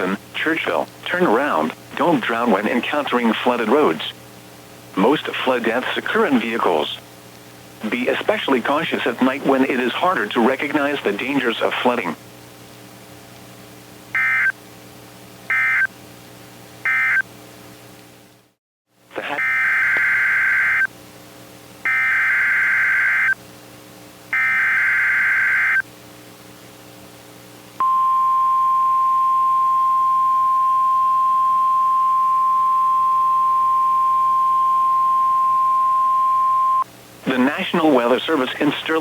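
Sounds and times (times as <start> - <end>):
buzzing data tone bursts: 14.2 - 14.5, 15.5 - 15.9, 16.9 - 17.2, 19.3 - 20.9, 21.9 - 23.4, 24.4 - 25.8
steady warning alarm tone: 14.2 - 14.5, 15.5 - 15.9, 16.9 - 17.2, 19.3 - 20.9, 21.9 - 23.4, 24.4 - 25.8, 27.8 - 36.8
faint low hum: 27.7 - 39.0.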